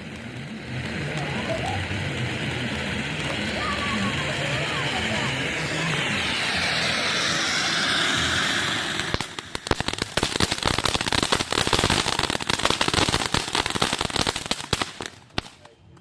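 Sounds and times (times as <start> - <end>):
firework hissing and crackling: 0.0 - 15.7.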